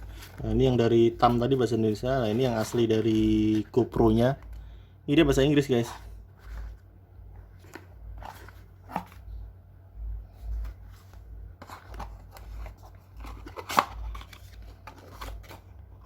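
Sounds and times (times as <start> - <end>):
paper and cardboard rustling: 0.0 - 4.5, 5.6 - 9.4, 10.2 - 16.0.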